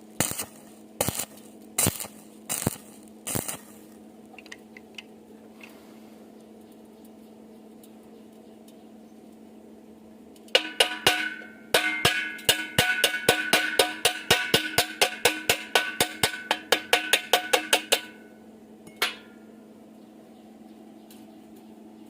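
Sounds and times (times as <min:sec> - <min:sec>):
hammer striking steel angle iron: 0:10.6 - 0:18.3, 0:18.9 - 0:19.4.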